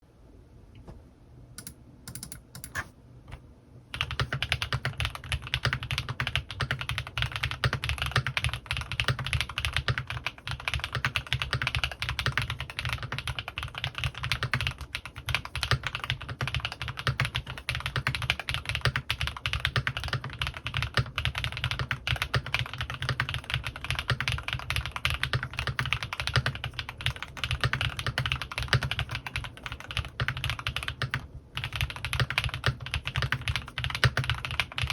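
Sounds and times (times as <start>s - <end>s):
mechanical keyboard typing: 1.6s - 2.9s, 3.9s - 34.9s.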